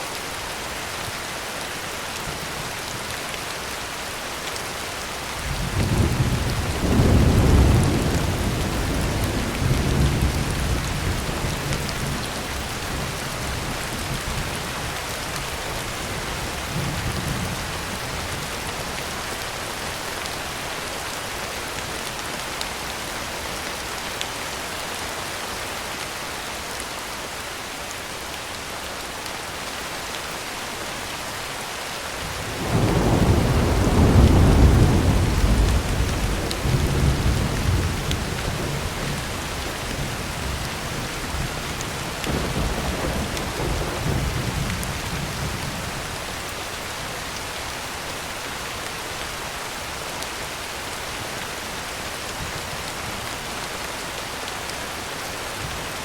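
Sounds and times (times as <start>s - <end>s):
heavy rain on a tin roof: 0.0s - 56.0s
thunder rolling: 32.5s - 39.2s.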